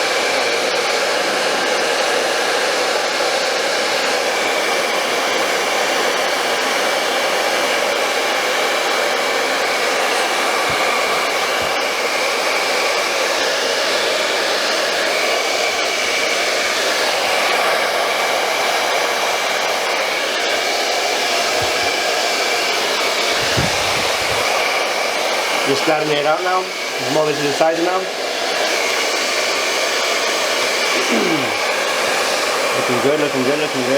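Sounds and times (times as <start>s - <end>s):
hair dryer blowing: 0.0s - 33.9s.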